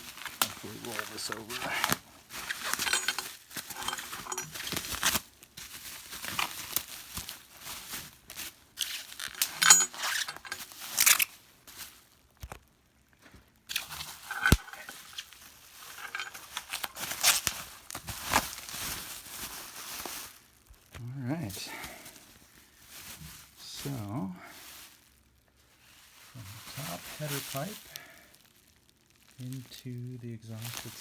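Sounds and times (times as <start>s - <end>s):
plastic wrapping crumpling: 0.0s - 31.0s
packing tape being torn: 4.5s - 5.4s, 6.1s - 7.5s, 8.8s - 12.7s, 13.7s - 19.1s.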